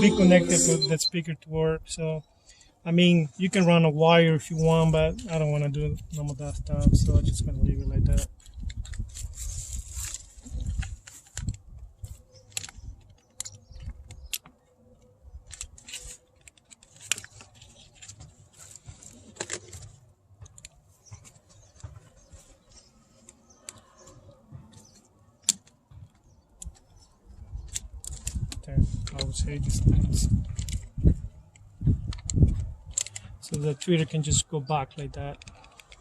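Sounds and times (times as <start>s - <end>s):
plastic parts clicking and tapping: 10.5s - 34.2s, 34.9s - 36.0s.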